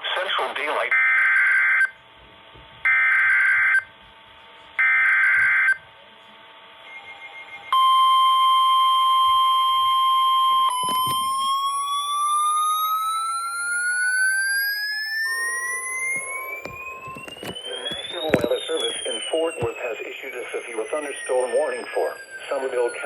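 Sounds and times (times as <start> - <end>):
tone rising in pitch: 10.8 - 23.0
warbling data tone bursts: 11.0 - 23.0
steady alert tone: 15.3 - 23.0.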